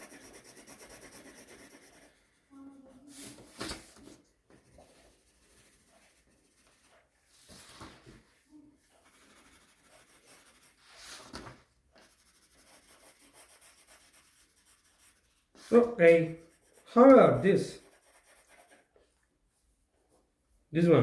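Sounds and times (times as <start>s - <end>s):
pencil scratching on paper: 0.0s - 8.2s, 8.8s - 19.1s.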